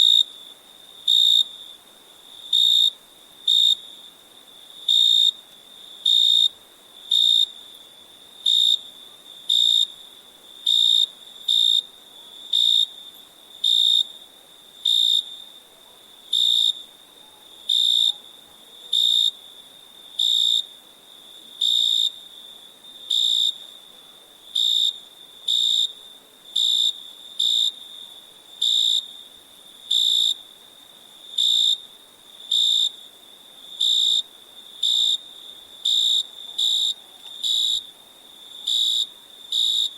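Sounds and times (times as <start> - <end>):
cricket chirping: 0.0 - 39.9
faint trill of crickets: 0.0 - 39.9.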